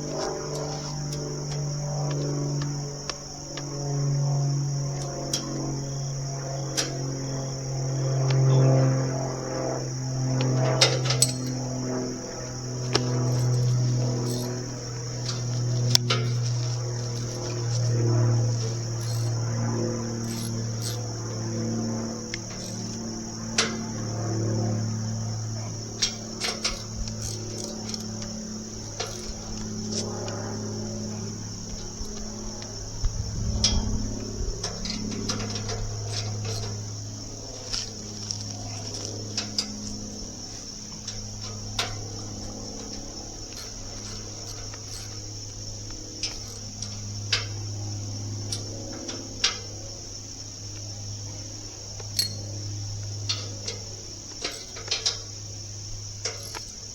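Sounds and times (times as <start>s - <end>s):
high-pitched insect chorus: 0.0s - 56.9s
low steady hum: 0.0s - 56.9s
clicks and knocks of metal tools: 6.8s - 7.1s, 10.4s - 11.6s, 12.9s - 19.4s, 20.2s - 21.4s, 22.3s - 23.0s, 23.6s - 24.1s, 25.9s - 30.4s, 34.6s - 36.9s, 37.6s - 47.6s, 52.0s - 52.6s, 53.2s - 55.4s, 56.2s - 56.9s.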